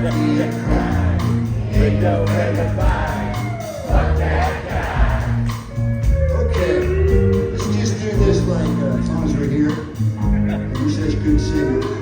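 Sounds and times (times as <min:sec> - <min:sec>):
crowd cheering and shouting: 0:00.0 - 0:08.4
live rock band: 0:00.0 - 0:12.0.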